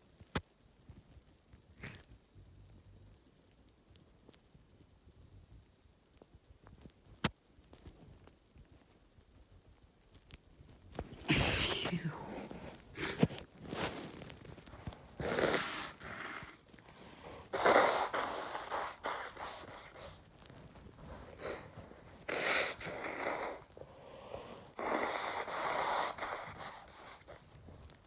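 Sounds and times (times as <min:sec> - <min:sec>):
person blowing nose: 0:11.2 - 0:14.1, 0:17.5 - 0:20.1.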